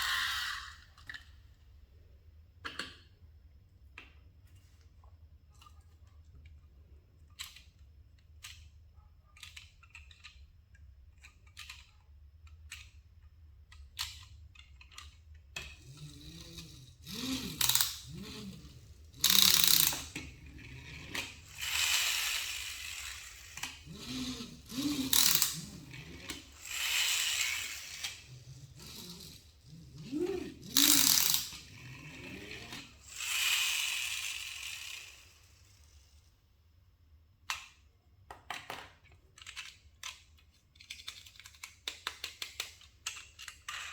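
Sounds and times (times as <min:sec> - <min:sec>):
small clicks and knocks: 0:07.2 - 0:15.8, 0:37.4 - 0:43.9.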